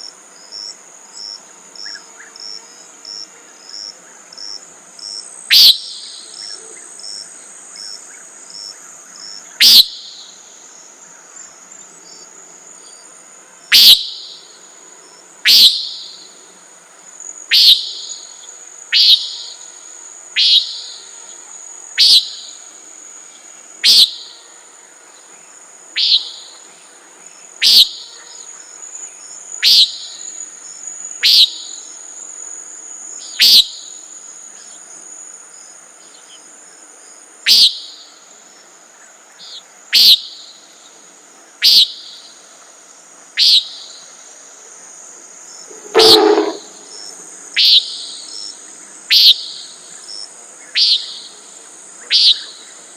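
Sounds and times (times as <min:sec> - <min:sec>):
crickets droning: 0:00.0 - 0:52.9
nighthawk nasal peent call: 0:09.6 - 0:10.2, 0:13.7 - 0:14.5, 0:15.4 - 0:16.2, 0:17.5 - 0:18.2, 0:18.9 - 0:19.7, 0:20.4 - 0:21.2, 0:22.0 - 0:22.5, 0:23.8 - 0:24.3, 0:27.6 - 0:28.2, 0:43.4 - 0:43.9, 0:45.7 - 0:47.0, 0:47.6 - 0:48.2, 0:49.1 - 0:49.6, 0:52.1 - 0:52.5.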